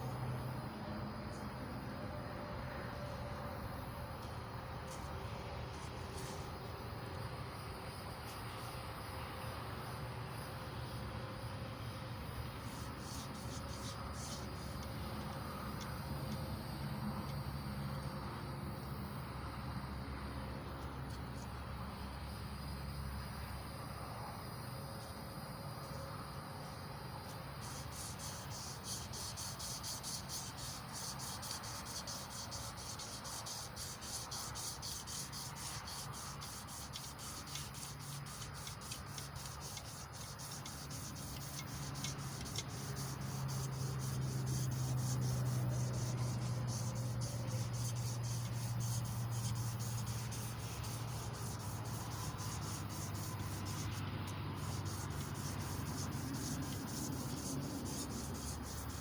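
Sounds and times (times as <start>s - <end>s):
emery cloth rubbing on metal: 12.6s - 15.3s, 27.6s - 59.0s.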